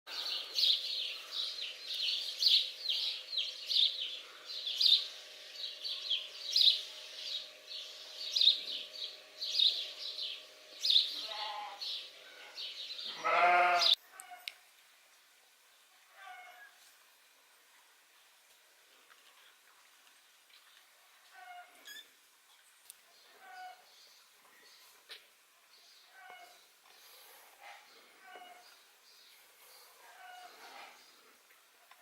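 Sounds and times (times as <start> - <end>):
young animals squeaking: 21.4 - 22.2.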